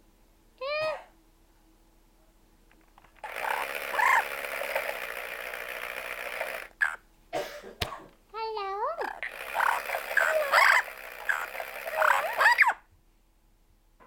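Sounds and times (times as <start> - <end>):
parrot harsh call: 3.2 - 4.9, 6.7 - 7.0, 9.0 - 12.9.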